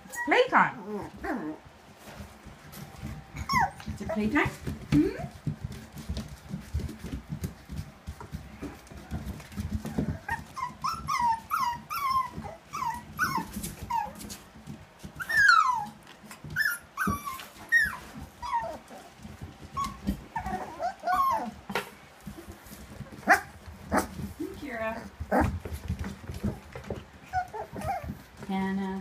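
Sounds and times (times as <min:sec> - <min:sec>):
puppies whimpering and yelping: 0:00.0 - 0:01.7, 0:02.8 - 0:04.4, 0:09.2 - 0:21.7, 0:25.3 - 0:28.3.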